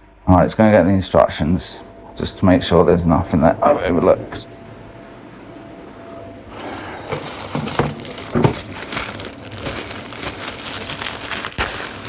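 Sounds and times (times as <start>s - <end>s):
packaging crinkling and rustling: 6.5s - 12.0s.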